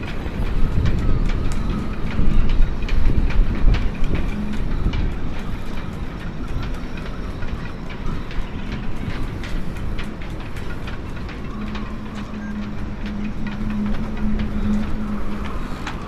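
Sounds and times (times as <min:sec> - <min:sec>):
gusting wind on microphone: 0:00.0 - 0:16.0
small sharp ticks and clicks: 0:00.0 - 0:16.0.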